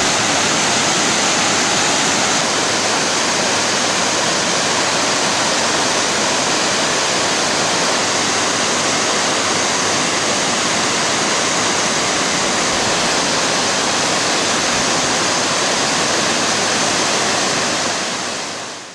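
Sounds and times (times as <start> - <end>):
waterfall roaring: 0.0 - 18.9.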